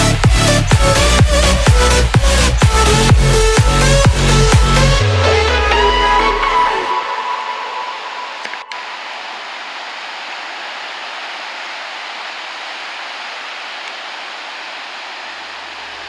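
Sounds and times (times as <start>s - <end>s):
ocean surf rushing: 6.9s - 16.0s.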